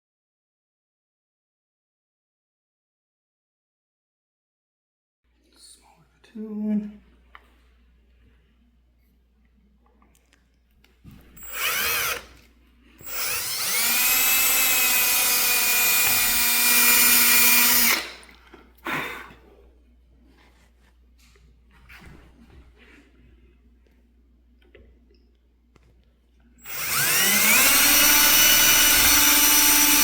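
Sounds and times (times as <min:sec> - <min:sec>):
electric drill whining: 0:11.4 - 0:12.4, 0:13.0 - 0:18.2, 0:26.6 - 0:30.0.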